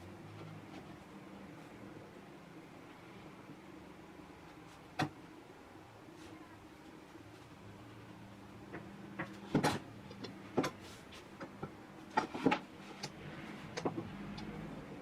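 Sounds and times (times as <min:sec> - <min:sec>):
sharp clicks and knocks: 0:11.4 - 0:14.6.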